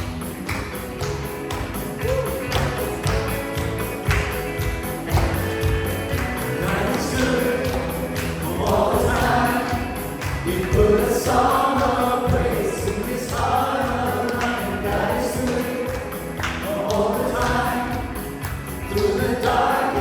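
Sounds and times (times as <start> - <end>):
group singing with band: 6.4 - 20.0.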